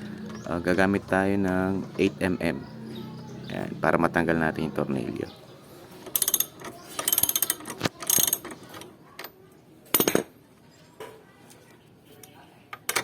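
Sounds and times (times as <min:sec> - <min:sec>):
ratchet wrench clicking: 0:06.1 - 0:08.5.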